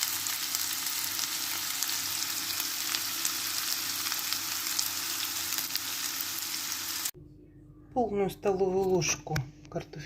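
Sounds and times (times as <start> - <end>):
onion frying in fat: 0.0 - 7.1.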